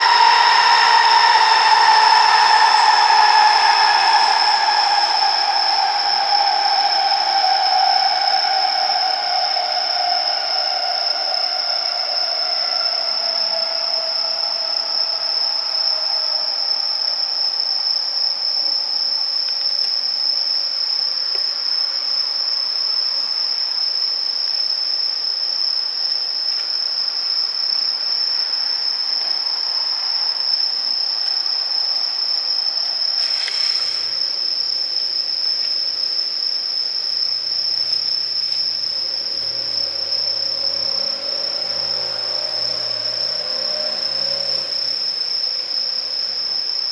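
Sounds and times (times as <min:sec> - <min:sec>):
low stepped tones: 0:00.0 - 0:17.4
short hiss: 0:33.2 - 0:34.3
train motor whine: 0:33.2 - 0:34.6, 0:37.4 - 0:46.7.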